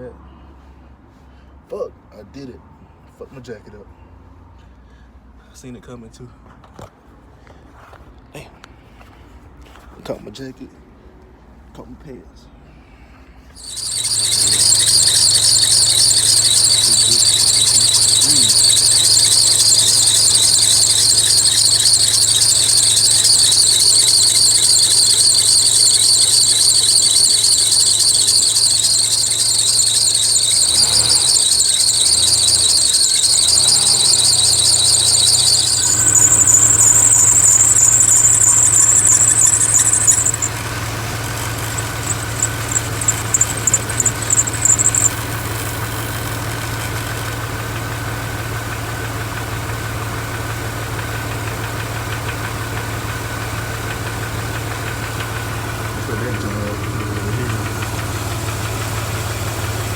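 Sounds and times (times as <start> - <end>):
high-pitched belt squeal: 13.6 - 48.0
car engine running: 13.6 - 59.9.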